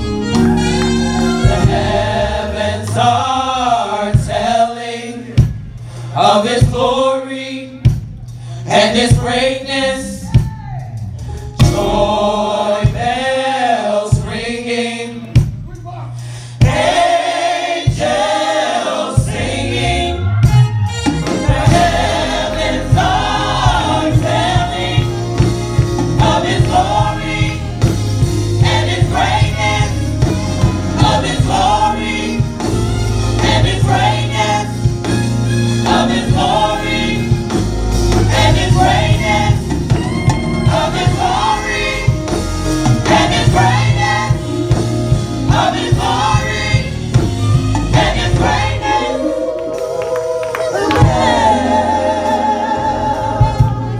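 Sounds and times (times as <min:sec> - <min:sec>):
heavy bass line: 0:00.0 - 0:03.6, 0:19.3 - 0:49.2
instrumental accompaniment: 0:00.0 - 0:04.7, 0:10.4 - 0:15.9, 0:16.6 - 0:53.9
gospel choir singing: 0:00.0 - 0:10.5, 0:11.2 - 0:15.6, 0:16.2 - 0:53.9.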